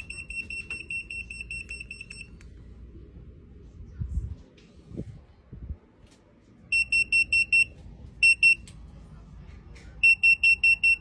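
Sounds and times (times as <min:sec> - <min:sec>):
short high-pitched beeps: 0:06.7 - 0:08.6, 0:10.0 - 0:11.0.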